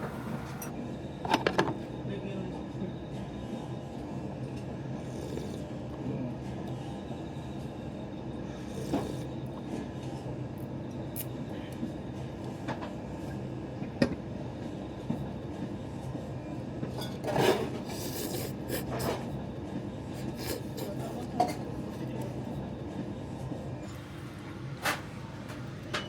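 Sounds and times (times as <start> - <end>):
train running: 0.0 - 0.8.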